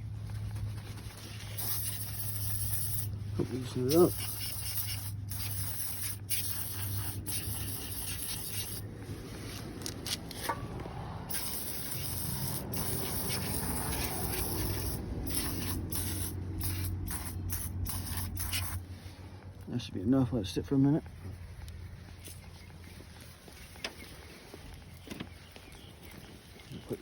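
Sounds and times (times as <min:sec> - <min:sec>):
aerosol can spraying: 0:01.4 - 0:08.9, 0:11.3 - 0:18.8.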